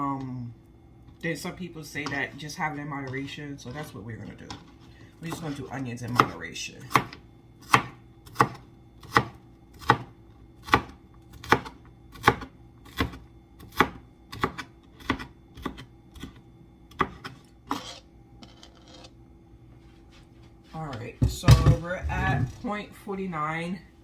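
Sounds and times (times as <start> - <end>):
knife chopping on cutting board: 5.3 - 18.0
knife scraping board: 17.0 - 19.2.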